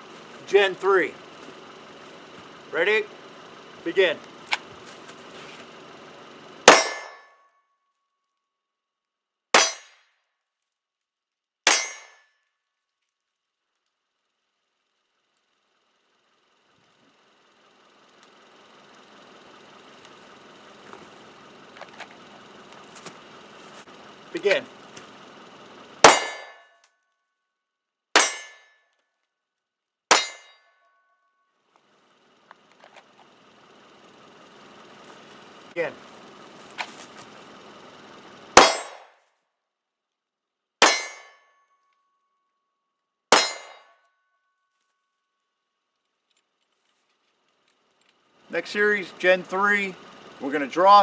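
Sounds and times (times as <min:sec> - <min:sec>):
pistol shots with ringing tail: 0:06.7 - 0:07.3, 0:09.6 - 0:10.0, 0:26.0 - 0:26.6, 0:38.6 - 0:39.1, 0:40.8 - 0:41.4.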